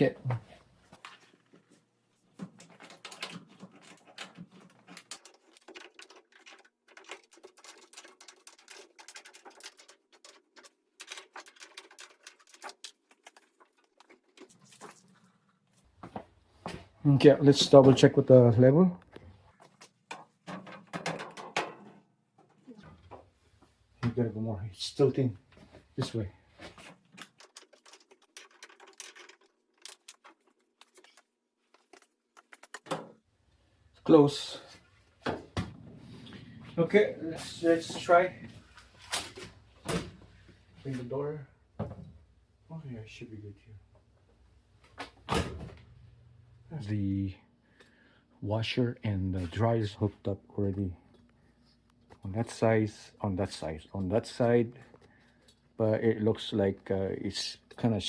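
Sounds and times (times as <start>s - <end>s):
faint clicks and scrapes: 0.5s - 16.2s, 25.5s - 33.1s
tools clicking and scraping on appliances: 26.6s - 33.2s.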